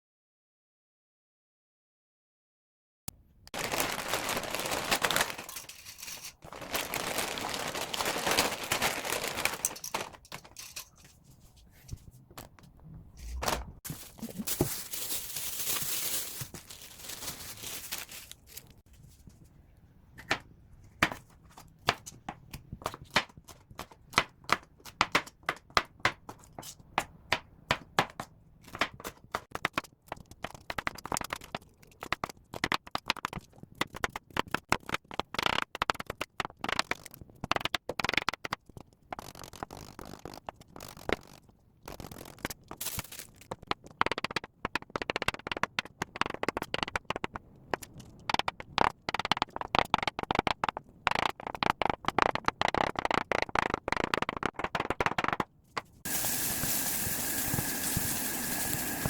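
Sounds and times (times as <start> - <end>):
steady hiss: 56.1 - 59.0.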